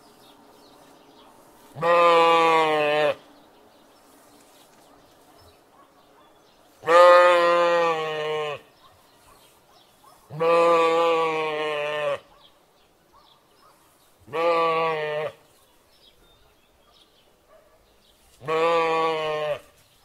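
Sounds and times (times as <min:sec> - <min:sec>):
sheep bleating: 0:01.8 - 0:03.2, 0:06.8 - 0:08.7, 0:10.4 - 0:12.3, 0:14.3 - 0:15.4, 0:18.4 - 0:19.7.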